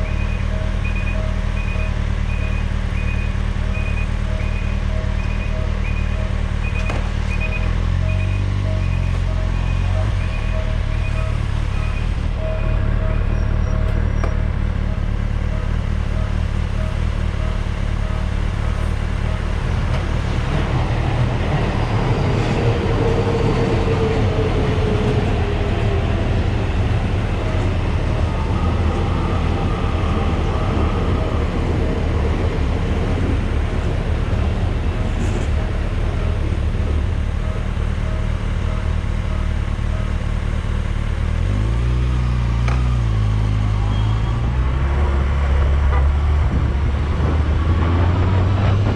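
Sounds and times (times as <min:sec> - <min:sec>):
level crossing alarm dinging: 0:00.0 - 0:19.7
whine: 0:00.0 - 0:41.0
road traffic rumble: 0:00.0 - 0:48.9
vehicle passing: 0:42.9 - 0:48.9.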